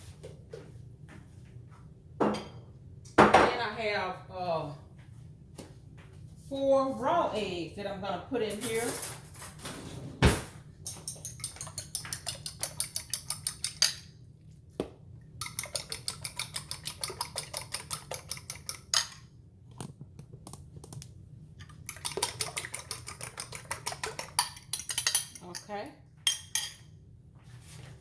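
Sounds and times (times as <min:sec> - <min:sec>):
whisk beating eggs in bowl: 0:11.0 - 0:14.0, 0:15.4 - 0:19.2, 0:21.7 - 0:25.7.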